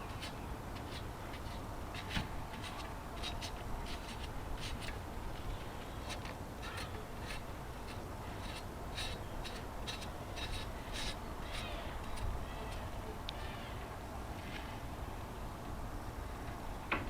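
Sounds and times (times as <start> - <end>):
hand scraping filler: 0.0 - 13.0
steady low hum: 0.0 - 16.8.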